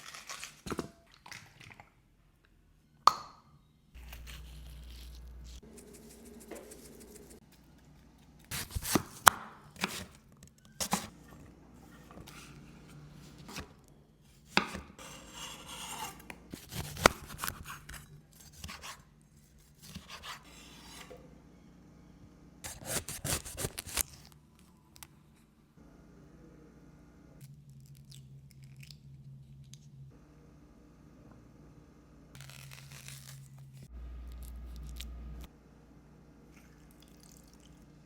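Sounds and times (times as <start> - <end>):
knife slicing and scraping: 4.0 - 7.6, 8.3 - 10.2, 14.5 - 21.2, 22.7 - 24.2
knife chopping on cutting board: 8.5 - 10.1, 14.5 - 19.0, 19.8 - 21.1, 22.7 - 24.0.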